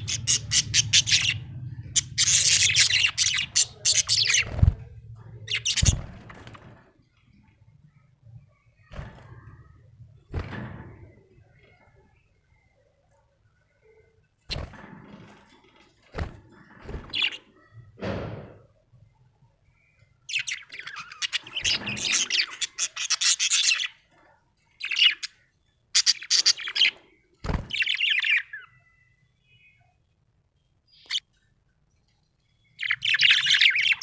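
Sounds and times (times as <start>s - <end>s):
budgerigar chirping and warbling: 0.0s - 4.5s, 5.5s - 6.0s, 20.3s - 24.0s, 26.0s - 26.9s, 32.8s - 34.0s.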